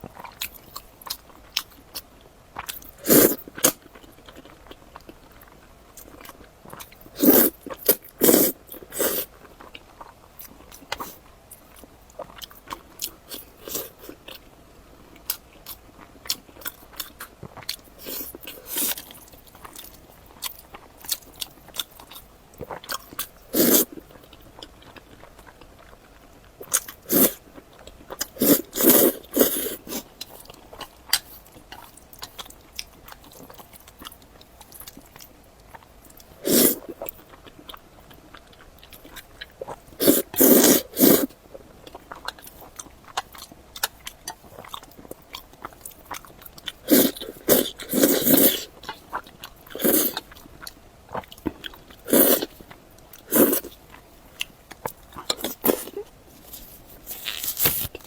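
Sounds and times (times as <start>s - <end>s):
crunchy chewing: 15.2s - 58.0s.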